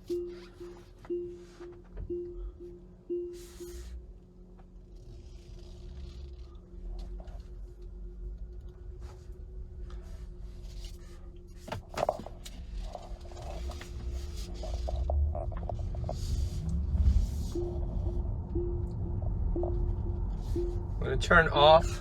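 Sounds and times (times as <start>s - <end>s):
car cabin hum: 0.0s - 5.0s, 5.6s - 22.0s
low road rumble: 0.0s - 22.0s.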